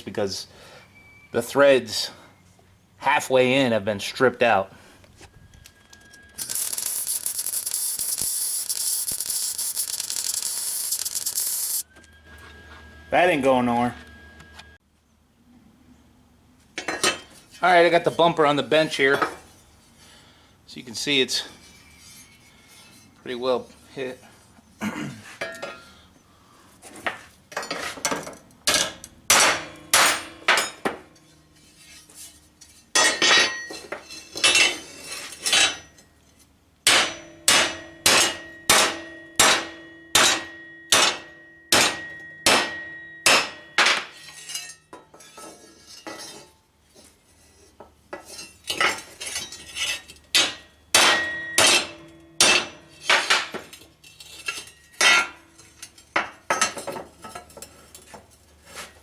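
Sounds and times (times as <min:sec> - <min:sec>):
hammer striking metal bumper: 0:28.7 - 0:31.0, 0:36.9 - 0:44.2, 0:50.4 - 0:53.6.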